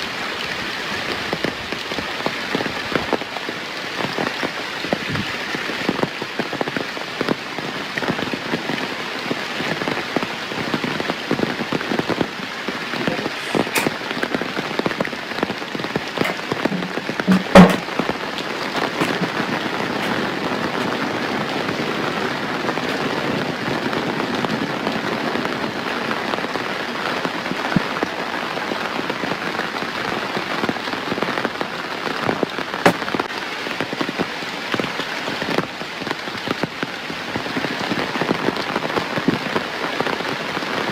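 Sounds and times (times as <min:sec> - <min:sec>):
steady rain falling: 0:00.0 - 0:40.9
sharp knock: 0:16.2 - 0:17.9.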